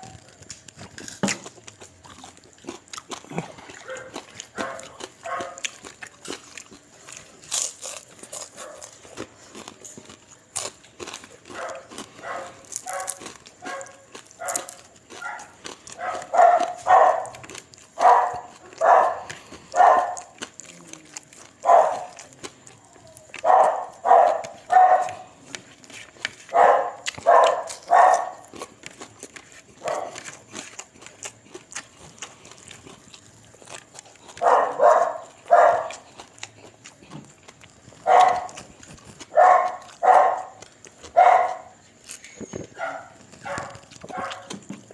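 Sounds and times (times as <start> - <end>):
clicking and smacking from eating: 0.0 - 44.9
dog barking: 3.8 - 5.8, 8.6 - 9.0, 11.5 - 20.5, 21.6 - 22.3, 23.3 - 25.3, 26.5 - 28.6, 29.8 - 30.3, 34.3 - 36.0, 38.0 - 38.6, 39.3 - 41.8, 42.8 - 44.6.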